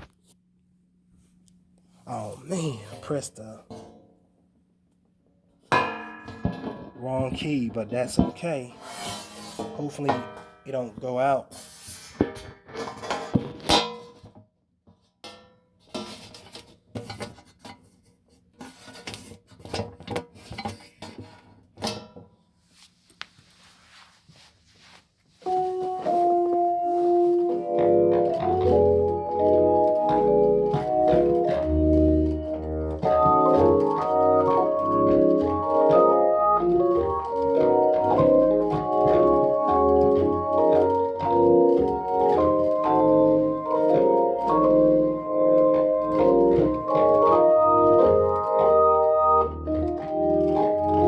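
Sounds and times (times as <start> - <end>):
organ playing chords and melody: 25.4 - 51.0.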